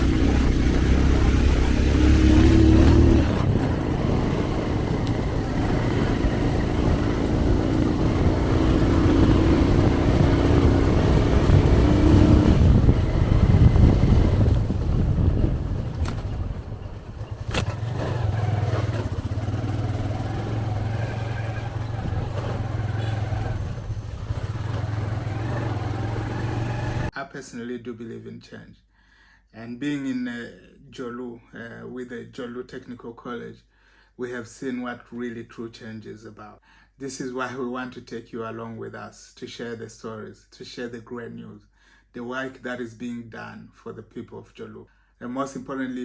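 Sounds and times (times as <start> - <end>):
motorcycle engine running: 0.0 - 27.1
sharp clicks: 15.9 - 16.4.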